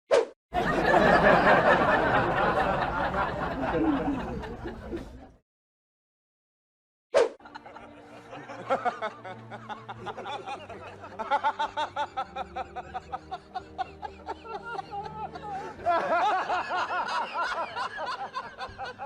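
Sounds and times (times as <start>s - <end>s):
background music: 7.3s - 19.0s.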